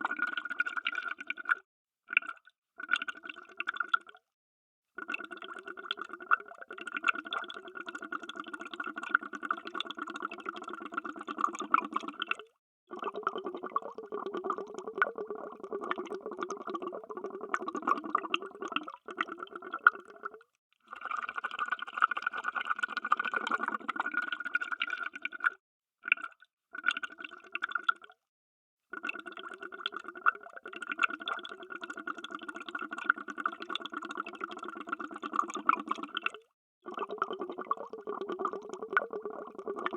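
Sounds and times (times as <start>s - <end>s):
underwater bubbling: 5.0s - 25.5s, 29.0s - 39.9s.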